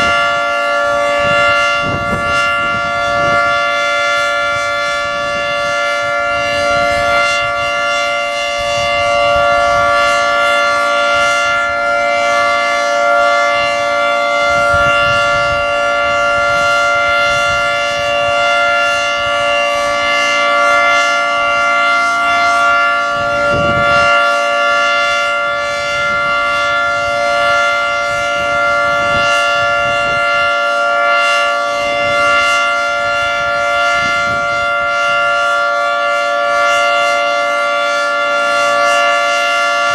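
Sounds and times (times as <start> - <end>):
three-tone warning siren: 0.0 - 39.9.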